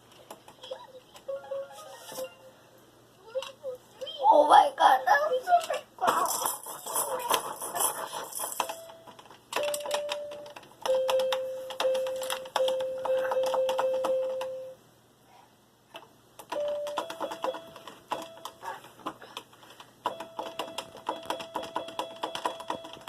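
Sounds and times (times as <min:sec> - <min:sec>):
plastic toy clicking and rattling: 0:05.5 - 0:14.2.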